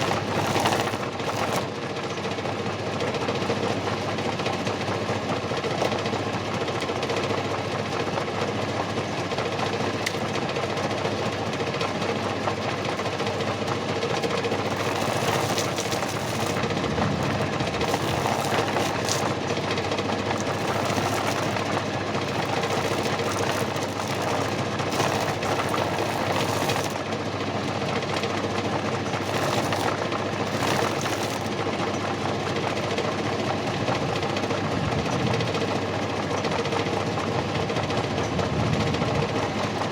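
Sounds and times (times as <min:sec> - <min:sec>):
feather plucker rattling: 0:00.0 - 0:01.7, 0:14.6 - 0:19.5, 0:20.3 - 0:27.0, 0:29.2 - 0:31.6.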